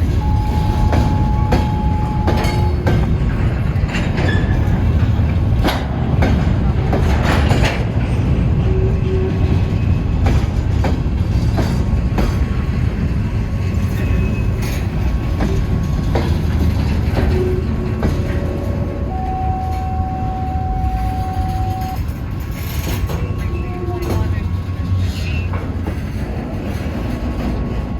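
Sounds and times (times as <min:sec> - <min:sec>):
train wheels clicking over rail joints: 0:00.0 - 0:20.0, 0:20.8 - 0:27.9
heavy rumble of freight cars: 0:00.0 - 0:27.9
wheel squeals: 0:13.9 - 0:25.6.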